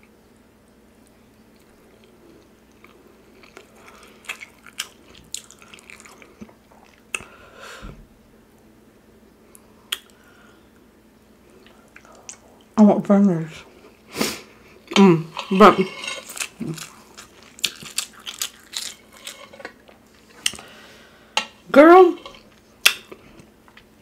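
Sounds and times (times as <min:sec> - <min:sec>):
chewing: 0:01.0 - 0:07.3, 0:14.6 - 0:20.7.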